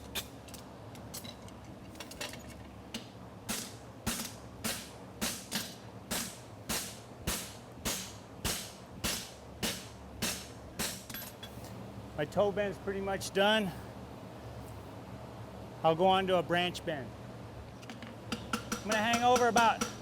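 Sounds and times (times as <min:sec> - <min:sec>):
cooling fan humming: 0:00.0 - 0:20.0
hammer striking metal on anvil: 0:03.5 - 0:11.2, 0:18.3 - 0:20.0.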